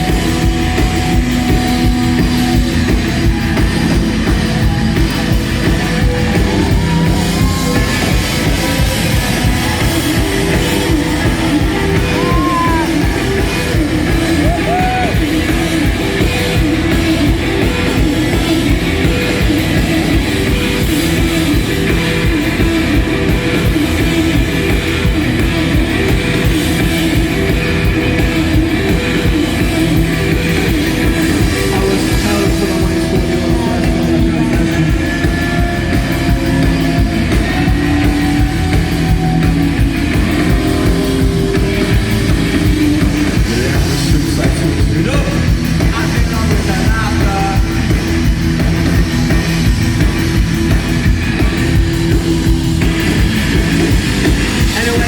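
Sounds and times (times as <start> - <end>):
rock band playing live: 0.0 - 55.0
person singing: 4.6 - 24.4, 28.0 - 48.0.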